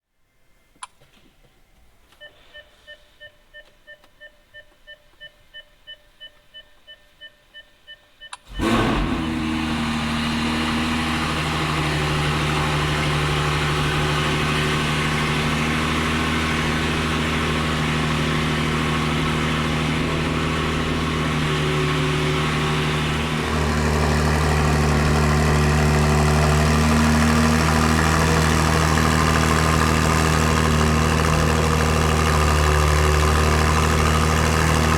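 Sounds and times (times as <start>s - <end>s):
car engine starting and idling: 8.4s - 34.9s.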